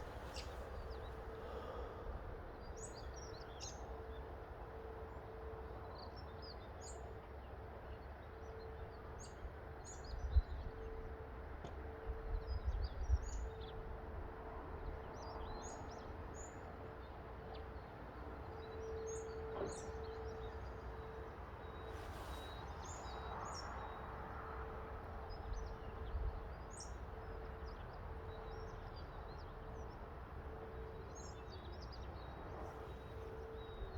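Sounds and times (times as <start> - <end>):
small birds chirping: 0.0 - 1.3
wind rumble on microphone: 10.0 - 10.8, 12.0 - 15.6.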